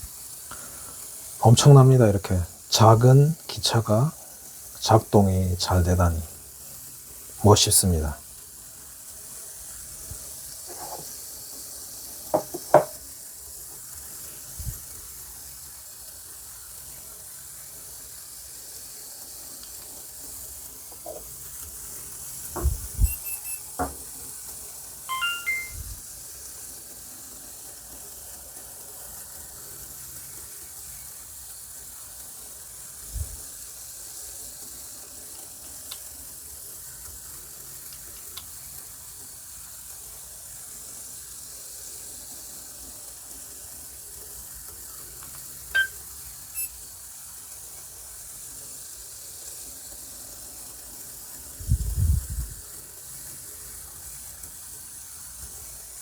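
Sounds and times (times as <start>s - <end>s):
model train faint hiss: 0.0s - 25.1s, 25.9s - 56.0s
brief chirp: 25.1s - 25.8s, 45.8s - 46.0s.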